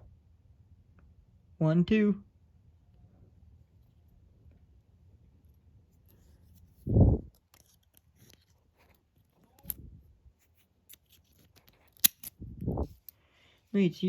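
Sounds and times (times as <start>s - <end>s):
lock pick ticking and scraping: 10.9s - 12.4s.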